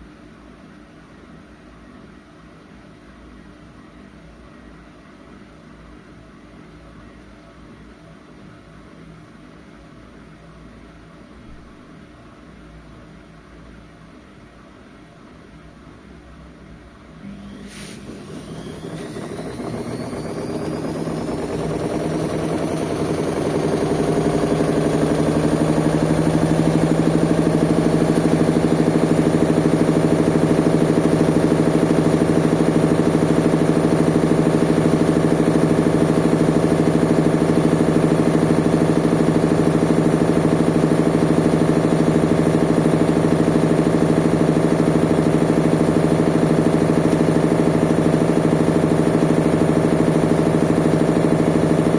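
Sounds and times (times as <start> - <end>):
washing machine drum spinning: 17.2 - 51.9.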